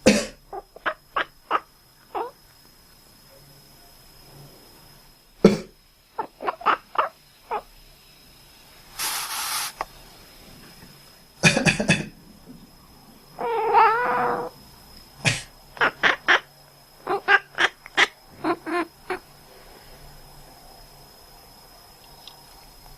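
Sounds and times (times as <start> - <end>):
person coughing: 0.0 - 0.4, 11.4 - 12.1, 15.3 - 15.5
cat hissing: 9.0 - 9.8, 13.4 - 14.5
cat crying: 13.4 - 14.5.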